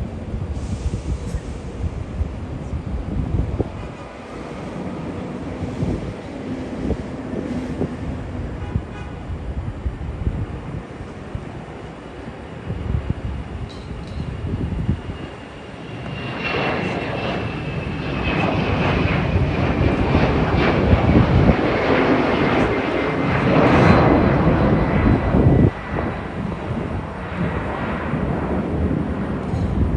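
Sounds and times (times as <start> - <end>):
heavy low rumble: 0.0 - 11.5
jet taking off: 0.0 - 29.9.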